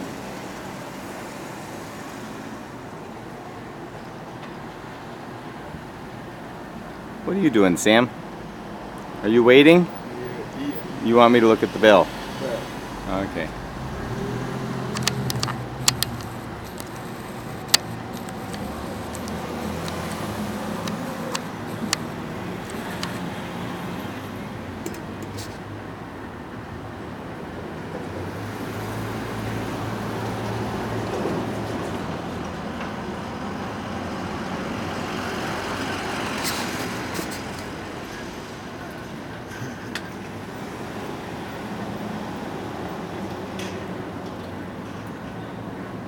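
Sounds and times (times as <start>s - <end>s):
street traffic engine and tyre noise: 0.0s - 46.0s
car engine running: 14.8s - 23.2s
sharp clicks: 14.8s - 23.3s.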